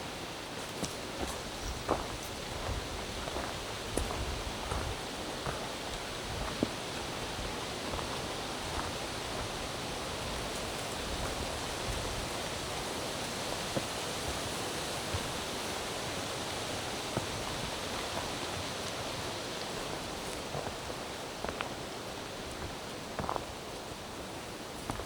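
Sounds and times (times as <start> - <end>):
footsteps on trail: 0.5 - 25.0.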